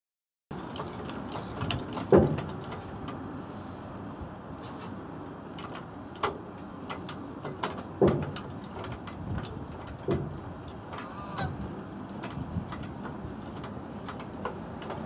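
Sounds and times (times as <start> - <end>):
brief squeak: 11.0 - 11.5.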